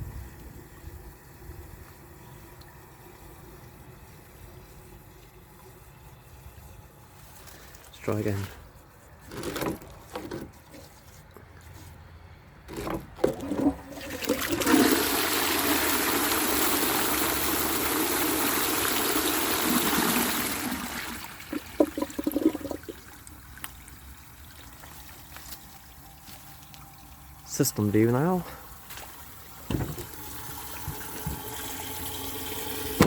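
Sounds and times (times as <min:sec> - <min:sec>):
water rushing through cistern: 0:13.4 - 0:26.0.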